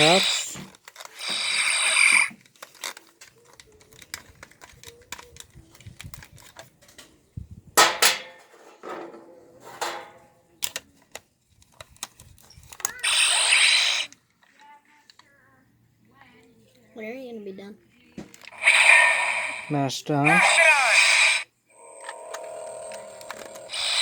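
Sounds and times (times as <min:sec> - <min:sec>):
toy electronic sound effect: 0:00.0 - 0:00.6, 0:01.2 - 0:02.4, 0:12.8 - 0:14.1, 0:18.5 - 0:21.5, 0:22.9 - 0:24.0
plastic toy clicks and knocks: 0:00.6 - 0:07.1, 0:09.8 - 0:15.3, 0:22.0 - 0:24.0.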